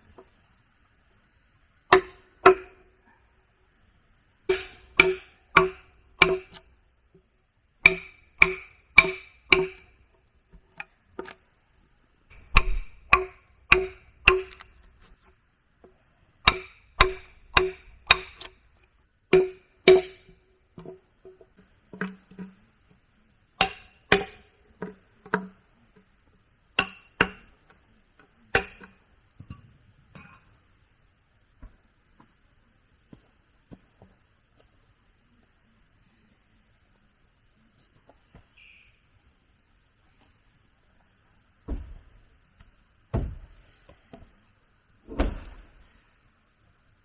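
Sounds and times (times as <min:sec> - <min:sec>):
tool striking wood: 0:01.9 - 0:02.8, 0:04.5 - 0:06.7, 0:07.8 - 0:11.4, 0:12.3 - 0:15.2, 0:16.4 - 0:21.4, 0:23.6 - 0:25.5, 0:26.8 - 0:27.5, 0:28.6 - 0:29.0.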